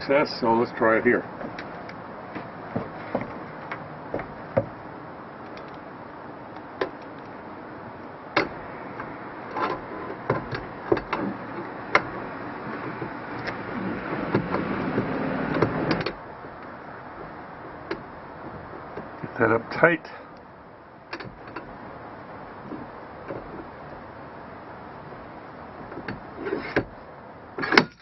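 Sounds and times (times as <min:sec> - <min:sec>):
metallic clicks and knocks: 0:05.4 - 0:05.8, 0:08.4 - 0:13.6, 0:14.2 - 0:16.7, 0:21.1 - 0:21.7.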